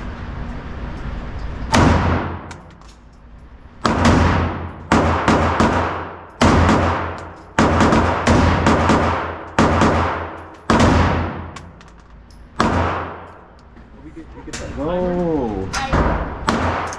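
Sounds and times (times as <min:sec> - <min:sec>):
rifle firing single shots: 0:03.8 - 0:11.8.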